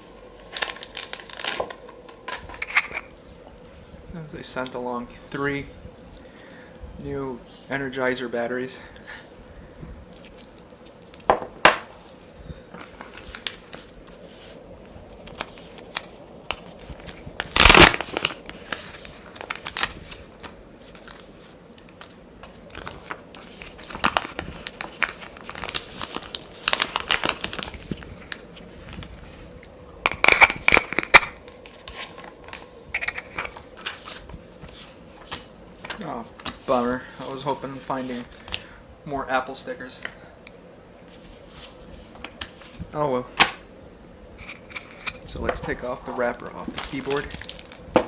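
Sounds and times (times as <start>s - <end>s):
packaging crinkling: 0.0s - 3.2s, 9.4s - 38.7s, 44.4s - 48.0s.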